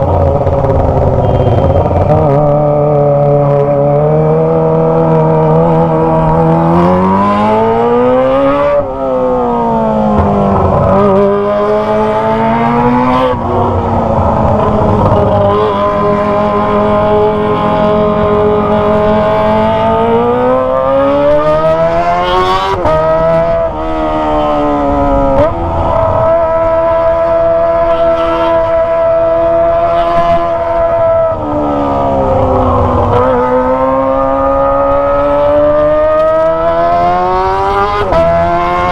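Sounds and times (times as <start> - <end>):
motorcycle engine screaming: 0.0 - 2.9.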